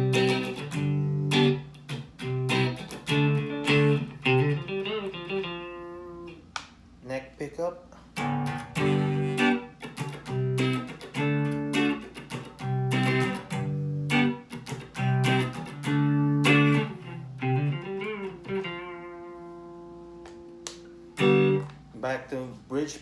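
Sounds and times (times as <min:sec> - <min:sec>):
clean electric guitar chords: 0:00.0 - 0:06.4, 0:08.2 - 0:22.0.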